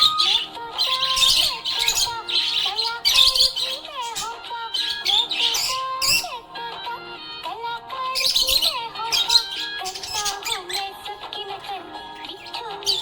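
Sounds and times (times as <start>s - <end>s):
budgerigar chirping: 0.0s - 6.4s, 8.2s - 11.0s, 12.2s - 13.0s
background music with gliding melody: 0.0s - 13.0s.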